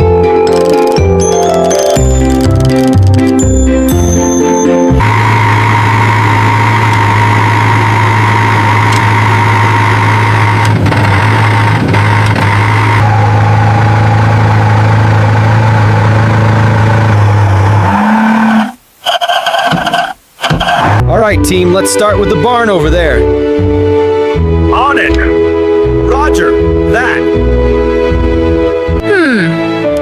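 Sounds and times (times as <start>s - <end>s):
small truck engine running: 0.0s - 21.1s.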